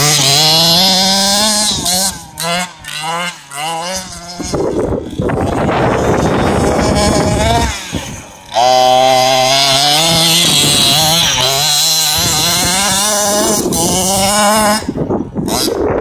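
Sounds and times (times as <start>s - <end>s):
small two-stroke engine revving: 0.0s - 16.0s.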